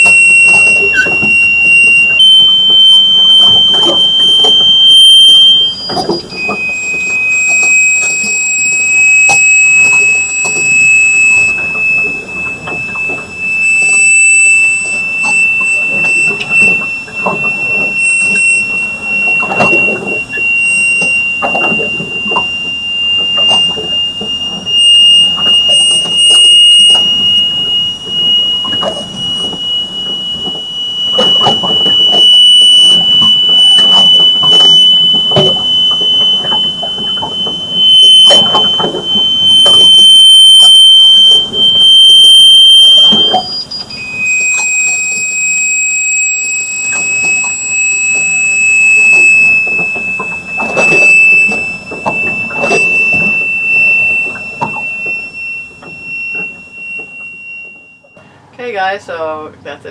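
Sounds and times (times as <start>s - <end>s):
piercing high-pitched tone: 0.0s - 59.8s.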